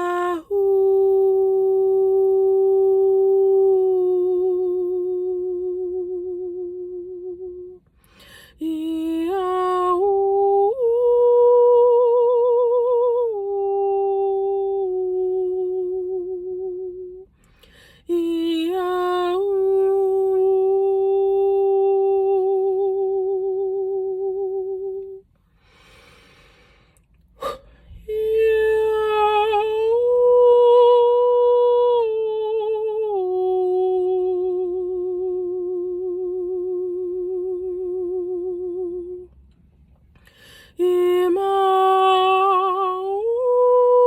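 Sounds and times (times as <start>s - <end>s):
woman singing wordless notes: 0.0s - 7.8s, 8.5s - 17.3s, 18.0s - 25.2s, 27.4s - 39.4s, 40.6s - 44.0s
woman breathing in: 7.9s - 8.6s, 17.4s - 18.0s, 25.4s - 28.0s, 40.2s - 40.8s.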